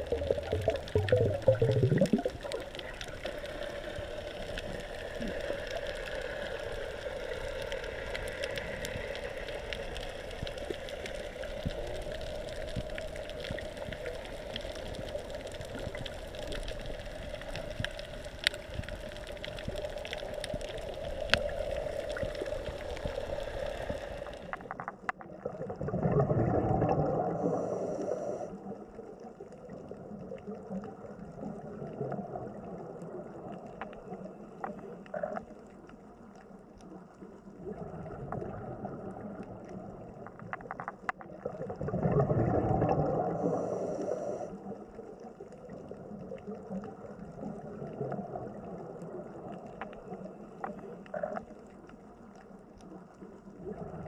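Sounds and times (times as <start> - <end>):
regulator bubbles bursting: 0.0 - 3.3, 24.5 - 27.4, 37.6 - 43.4
bubbling water: 0.0 - 28.0, 37.2 - 52.1
underwater drone: 0.0 - 54.0.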